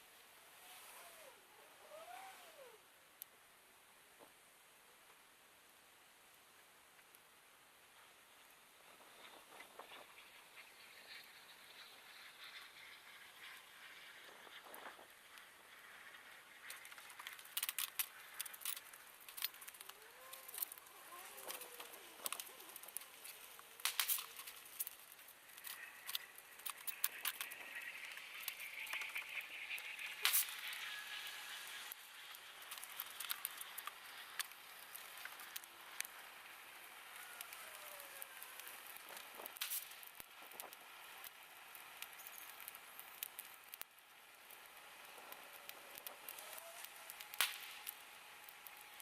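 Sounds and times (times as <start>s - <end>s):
faint hiss: 0.0s - 49.0s
faint wavering whistles: 0.5s - 2.8s, 19.6s - 32.0s
bonfire crackling and popping: 4.2s - 49.0s.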